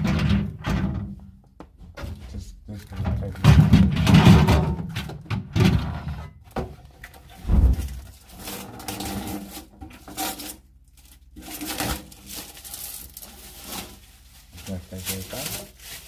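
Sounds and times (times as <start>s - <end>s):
fridge parts knocking and rubbing: 0.0s - 10.5s
heavy thump: 7.4s - 8.1s.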